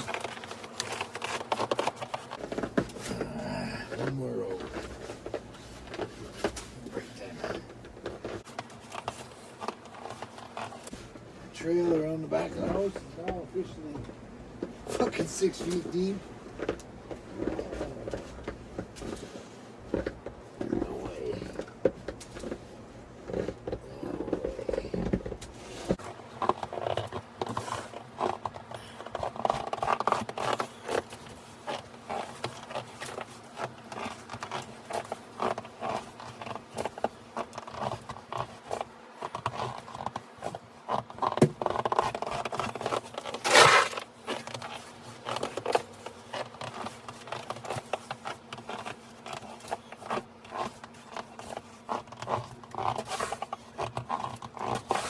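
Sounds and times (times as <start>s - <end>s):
snow shovel crunching snow: 25.5s - 55.0s
shovel scrape: 42.1s - 50.7s.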